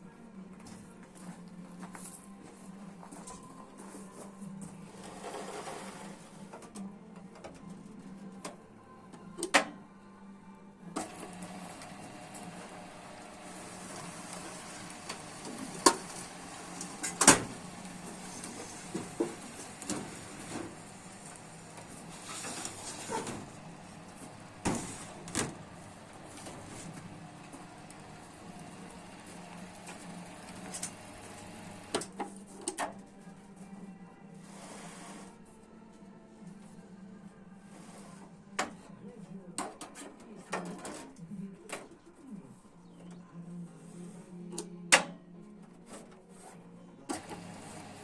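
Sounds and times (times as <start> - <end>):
machine low hum: 11.0 - 32.0.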